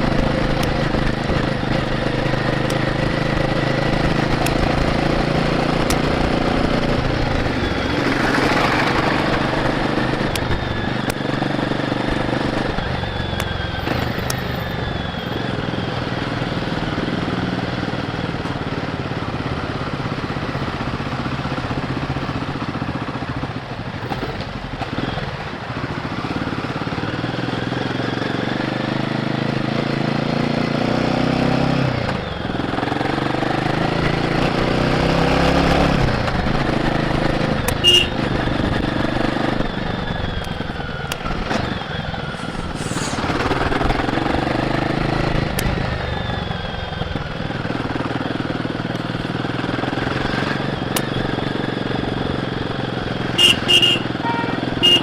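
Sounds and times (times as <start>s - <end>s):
motorcycle engine revving: 0.0s - 23.3s, 24.0s - 55.0s
wind rushing: 42.2s - 44.6s
brief sharp high sound: 42.4s - 43.7s, 53.8s - 55.0s.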